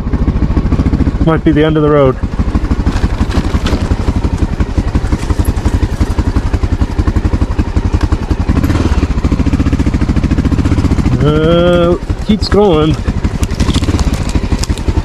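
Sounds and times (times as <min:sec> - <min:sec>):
motorcycle engine thumping: 0:00.0 - 0:15.0.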